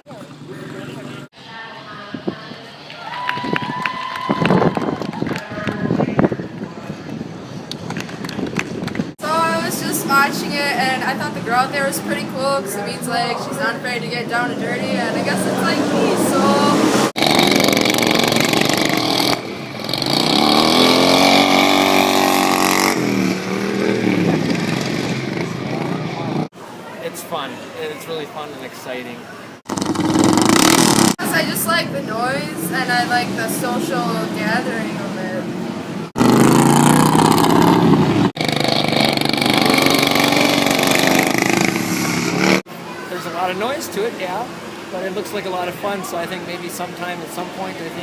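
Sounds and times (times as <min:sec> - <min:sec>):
lawn mower engine revving: 0:14.9 - 0:26.5, 0:29.6 - 0:31.2, 0:36.1 - 0:42.6.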